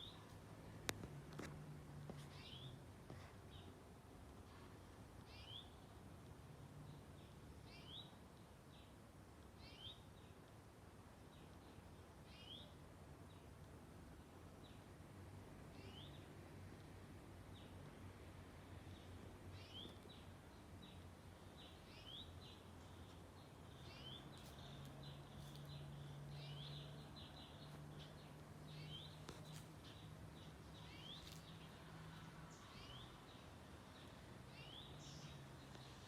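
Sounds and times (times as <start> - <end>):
bird chirping: 0.0 - 0.4, 2.1 - 3.8, 5.2 - 6.0, 6.8 - 10.5, 11.2 - 13.5, 15.7 - 16.3, 18.8 - 36.0.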